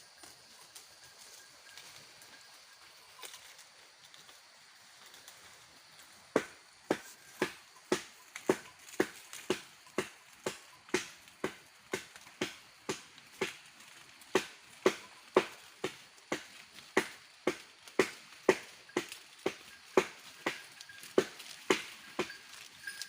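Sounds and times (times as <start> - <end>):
chopping knocks: 6.4 - 13.6.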